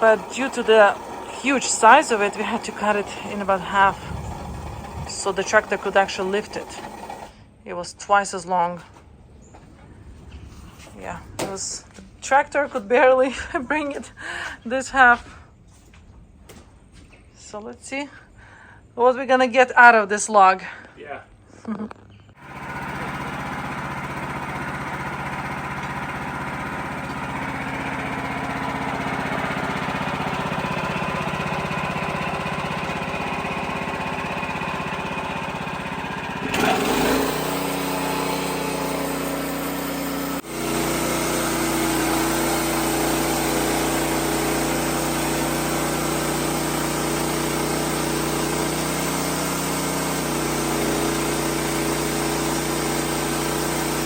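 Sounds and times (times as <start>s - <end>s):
sawmill engine running: 0.0s - 7.5s, 22.4s - 54.0s.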